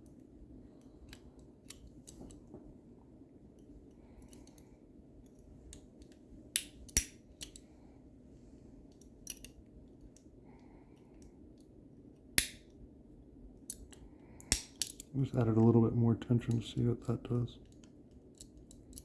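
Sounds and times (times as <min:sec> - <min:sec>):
metallic clicks of lock picking: 0:04.2 - 0:04.7, 0:05.7 - 0:07.7, 0:08.9 - 0:10.2, 0:12.4 - 0:12.8, 0:13.7 - 0:15.1, 0:17.6 - 0:19.0.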